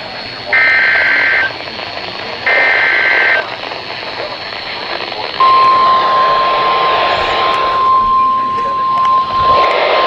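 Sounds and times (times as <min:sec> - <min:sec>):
radio hiss: 0:00.0 - 0:10.0
digital data burst screech: 0:00.5 - 0:01.6, 0:05.4 - 0:10.0.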